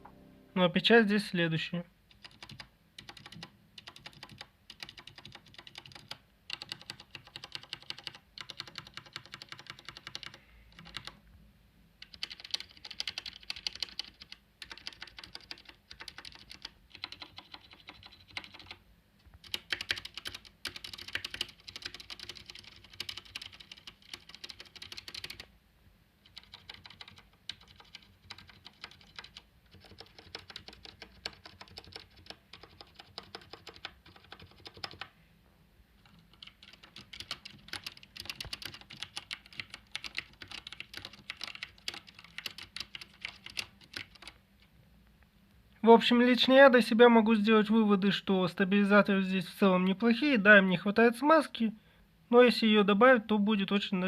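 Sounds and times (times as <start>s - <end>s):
mechanical keyboard typing: 2.1s - 11.2s, 12.0s - 18.8s, 19.4s - 25.5s, 26.2s - 35.1s, 36.0s - 44.4s.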